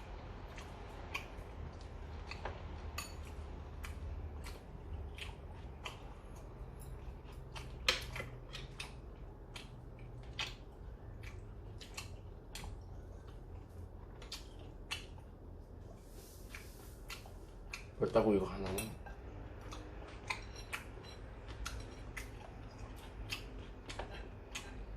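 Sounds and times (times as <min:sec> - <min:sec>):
low steady hum: 0:00.0 - 0:24.9
utensils clinking against dishes: 0:18.6 - 0:19.3, 0:20.3 - 0:22.4.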